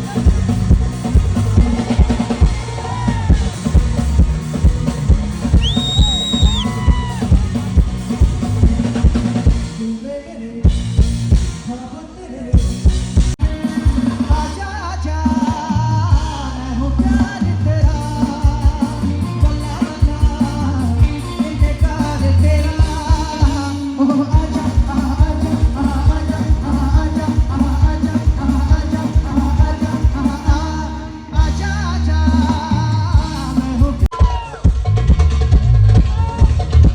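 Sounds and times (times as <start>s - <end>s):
heavy bass-drum beat: 0.0s - 11.8s, 12.5s - 36.9s
person singing: 13.4s - 34.7s.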